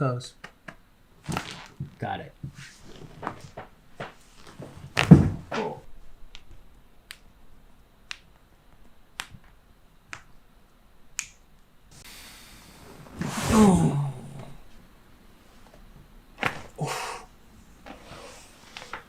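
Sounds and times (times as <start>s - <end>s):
person exclaiming oh: 13.4s - 14.6s, 16.8s - 17.3s.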